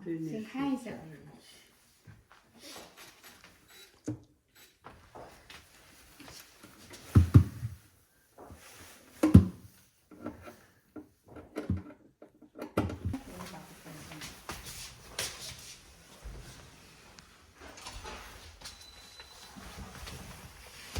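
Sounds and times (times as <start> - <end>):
dull thumps and knocks: 7.2 - 7.7.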